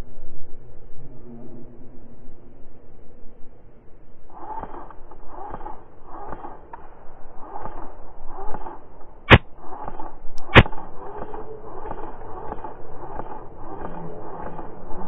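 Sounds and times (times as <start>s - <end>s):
steady rustling: 4.3s - 15.0s
airsoft gun cracks: 4.6s - 14.6s.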